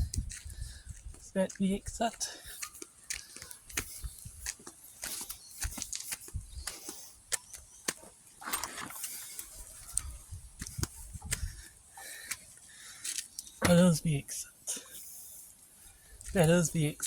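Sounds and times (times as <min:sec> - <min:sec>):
low microphone rumble: 0:00.0 - 0:01.2
footsteps on outdoor track: 0:00.0 - 0:14.1, 0:16.1 - 0:17.0.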